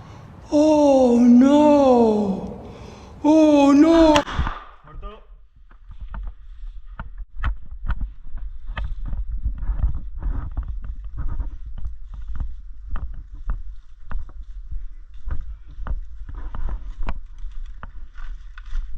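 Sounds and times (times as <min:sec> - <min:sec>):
deep wind rumble on microphone: 0:05.4 - 0:18.9.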